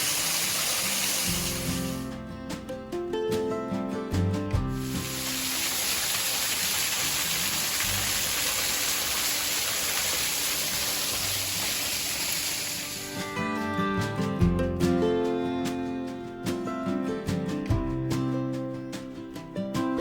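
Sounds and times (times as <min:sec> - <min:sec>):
waterfall rushing hiss: 0:00.0 - 0:02.1, 0:04.7 - 0:13.3.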